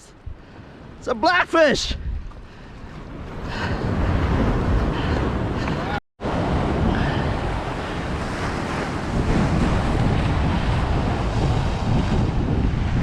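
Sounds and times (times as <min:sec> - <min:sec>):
wind buffeting microphone: 0:00.1 - 0:13.0
waves washing against rocks: 0:03.1 - 0:13.0.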